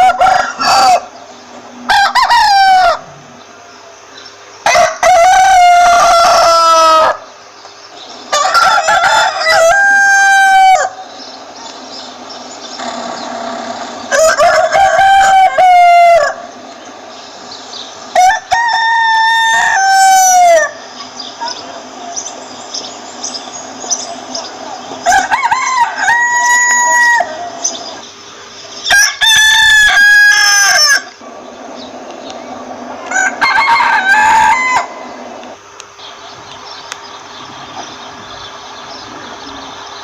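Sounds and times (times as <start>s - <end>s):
rooster crowing: 0.0s - 3.2s, 4.6s - 7.3s, 8.3s - 11.2s, 12.8s - 16.6s, 18.1s - 21.0s, 24.9s - 28.0s, 28.8s - 31.2s, 32.7s - 35.6s.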